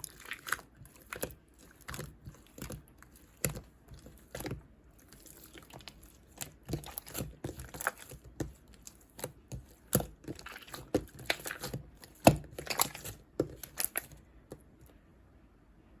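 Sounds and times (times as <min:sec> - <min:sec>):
slime squishing with clicks: 0:00.0 - 0:15.0.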